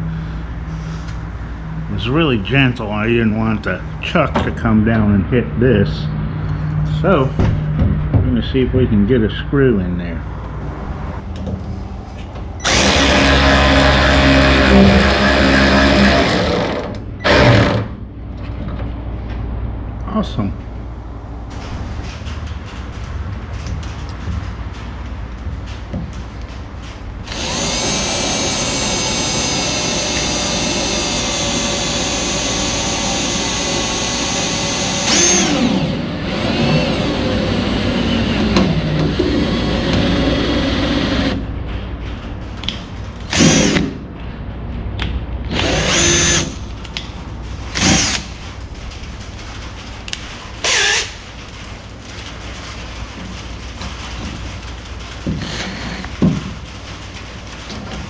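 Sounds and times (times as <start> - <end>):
power drill whining: 12.6 - 17.9, 27.3 - 41.4, 43.3 - 43.8, 45.5 - 46.6, 47.8 - 48.2, 50.6 - 51.1, 55.4 - 56.1.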